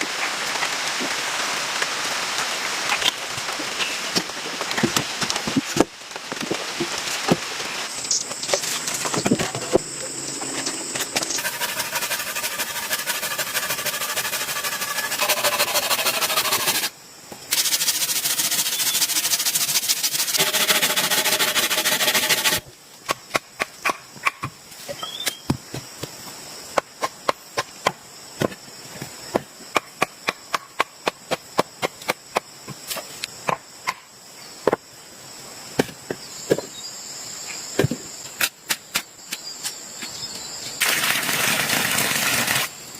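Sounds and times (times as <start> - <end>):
heavy rain hiss: 0.0 - 9.3, 40.8 - 42.9
high insect drone: 7.0 - 42.9.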